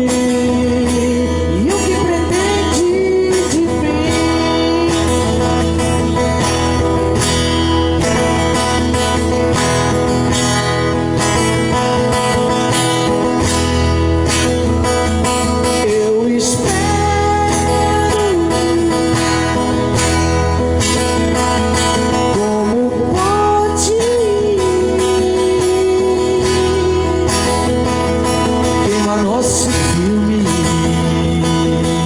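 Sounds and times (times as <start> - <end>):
man singing: 0.0 - 6.6, 15.2 - 20.4, 21.6 - 32.0
acoustic guitar strummed: 0.0 - 32.0.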